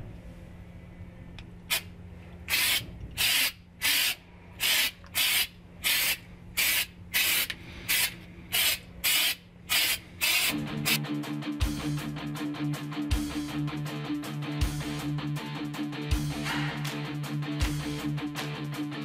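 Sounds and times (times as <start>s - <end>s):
aerosol can spraying bursts: 2.5s - 11.0s.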